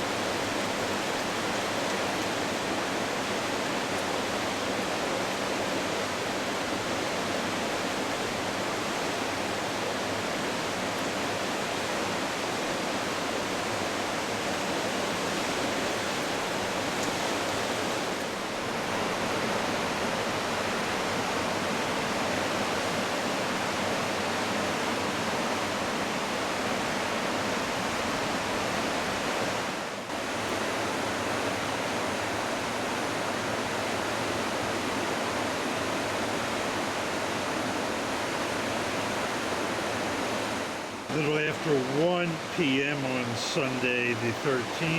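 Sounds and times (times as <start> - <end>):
river rushing in flood: 0.0 - 44.9.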